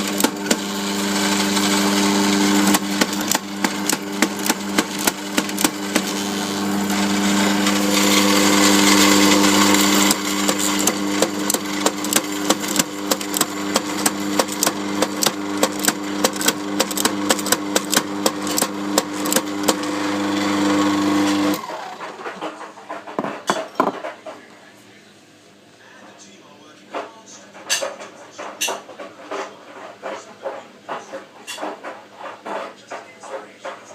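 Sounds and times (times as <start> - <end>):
coffee grinder motor humming: 0.0 - 22.2
noisy grinding: 0.0 - 24.3.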